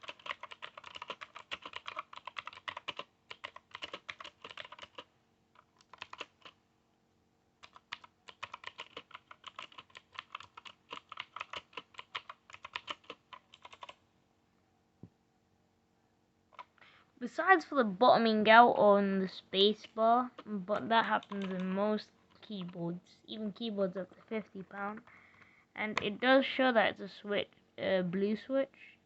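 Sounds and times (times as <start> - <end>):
fast typing on clicky keyboard: 0.0 - 6.6, 7.6 - 14.0, 20.4 - 22.8.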